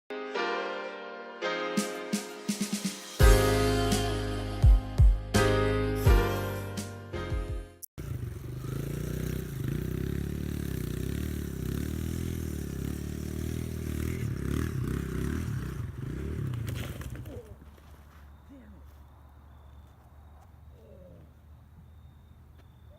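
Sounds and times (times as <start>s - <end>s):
dirt bike engine revving: 8.0s - 17.3s.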